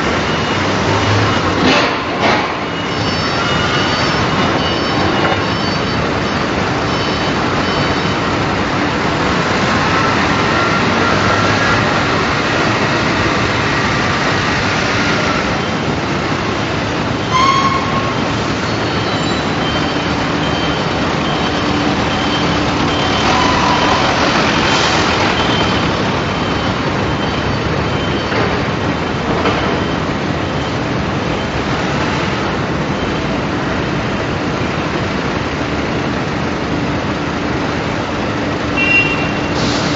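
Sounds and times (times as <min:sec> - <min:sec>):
industrial machinery noise: 0:00.0 - 0:39.9
short beep: 0:17.2 - 0:24.2, 0:38.8 - 0:39.6
high squealing tones: 0:17.2 - 0:28.3.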